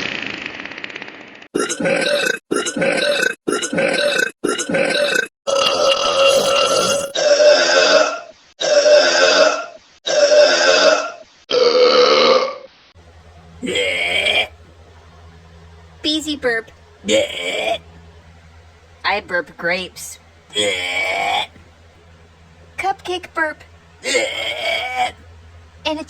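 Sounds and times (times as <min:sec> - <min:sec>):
loud burps: 0:01.6 - 0:12.7, 0:13.6 - 0:14.5, 0:17.1 - 0:17.8, 0:20.5 - 0:21.7, 0:24.0 - 0:25.2.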